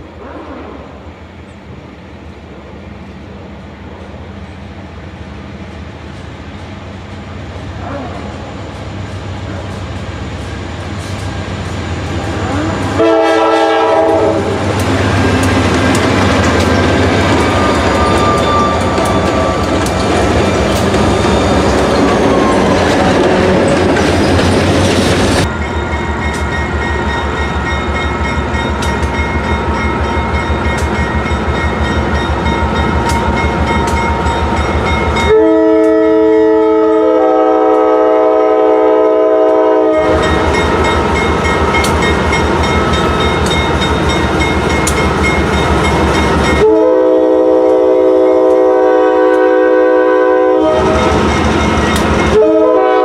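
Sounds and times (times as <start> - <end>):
train rushing past: 0.0 - 53.0
locomotive air horn blast: 12.2 - 14.8, 35.2 - 40.3, 46.6 - 51.2, 52.2 - 53.0
train wheels clacking on rails: 13.0 - 36.5, 39.4 - 49.5, 50.6 - 53.0.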